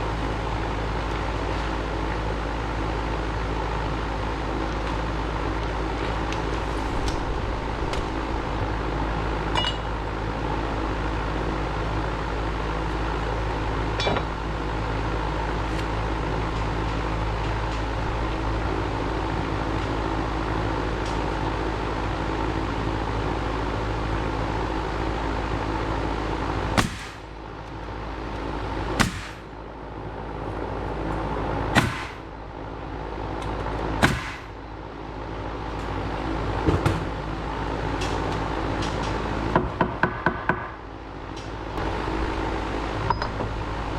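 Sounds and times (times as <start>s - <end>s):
engine running: 0.0s - 43.9s
sharp knocks: 26.8s - 27.2s, 29.0s - 29.5s, 31.8s - 32.2s, 34.0s - 34.5s.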